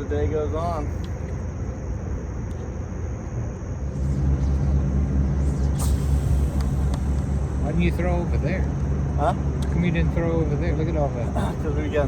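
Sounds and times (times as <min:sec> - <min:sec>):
boat motor humming: 0:03.8 - 0:12.0.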